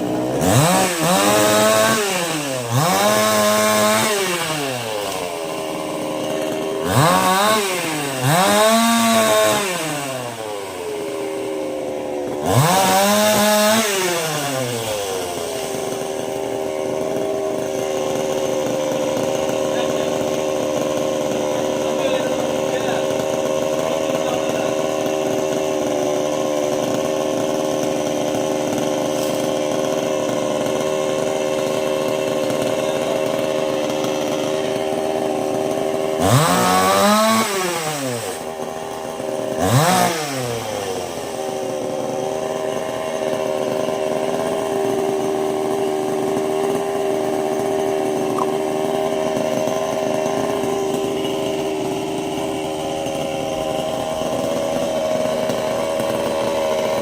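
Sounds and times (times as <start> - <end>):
chainsaw running and revving: 0.0 - 57.0.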